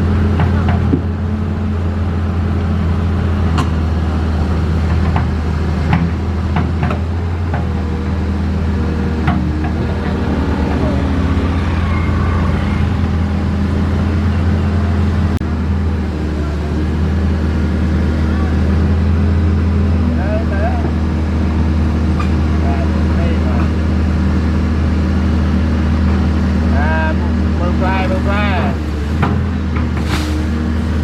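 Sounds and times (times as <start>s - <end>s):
excavator diesel engine running: 9.6s - 14.2s.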